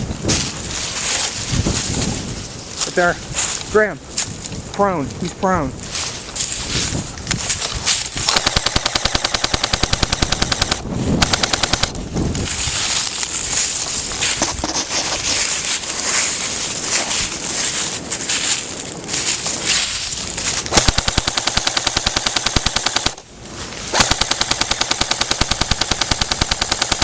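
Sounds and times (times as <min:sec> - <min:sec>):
airsoft rifle firing rapidly: 0:08.2 - 0:12.0, 0:20.7 - 0:23.3, 0:23.9 - 0:27.0.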